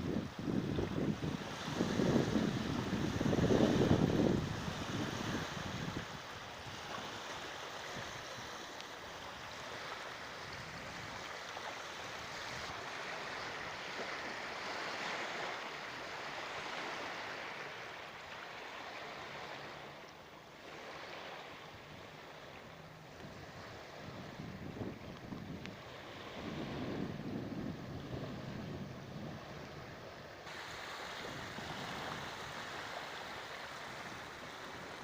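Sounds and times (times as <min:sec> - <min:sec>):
wind gusting on microphone: 0:00.0 - 0:08.4, 0:23.0 - 0:35.0
waves lapping and splashing: 0:00.0 - 0:35.0.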